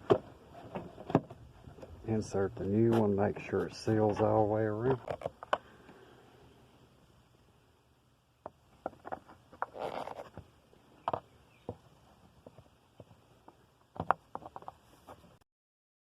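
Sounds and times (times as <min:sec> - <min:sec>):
scraping rustle: 0:00.5 - 0:05.4, 0:08.9 - 0:10.4
plastic clicks and knocks: 0:13.9 - 0:14.8.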